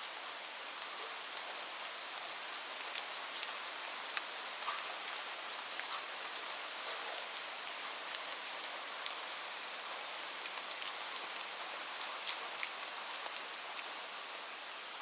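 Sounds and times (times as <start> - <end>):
light rain hissing: 0.0 - 15.0
raindrops ticking on a surface: 0.0 - 15.0.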